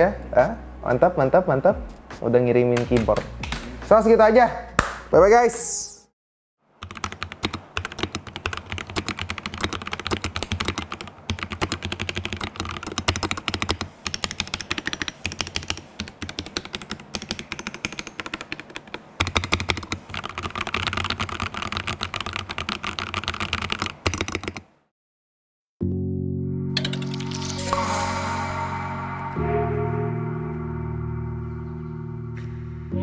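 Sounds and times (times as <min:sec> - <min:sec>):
mechanical keyboard typing: 0:06.8 - 0:24.7.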